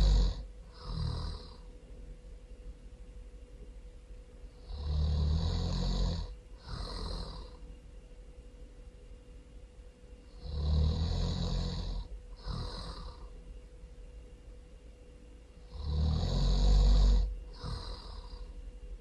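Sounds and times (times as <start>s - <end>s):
person snoring loudly: 0.0s - 1.7s, 4.6s - 7.6s, 10.4s - 13.3s, 15.7s - 18.5s.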